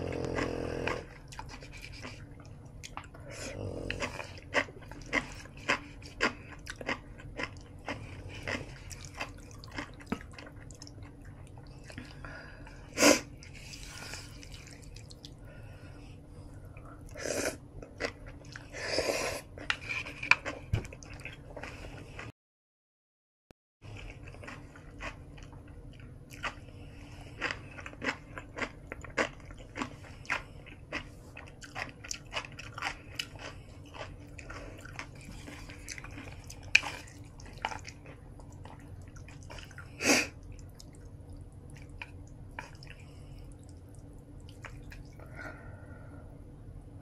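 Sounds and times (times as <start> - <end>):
close chewing with mouth clicks: 0.0 - 12.3, 13.3 - 15.4, 23.9 - 45.3
low hum: 32.6 - 47.0.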